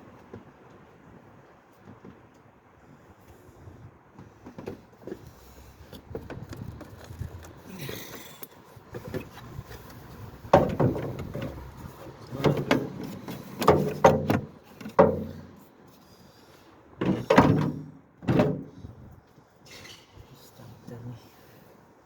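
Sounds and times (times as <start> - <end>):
sharp ringing clunks and knocks: 10.4 - 15.6, 17.0 - 18.8.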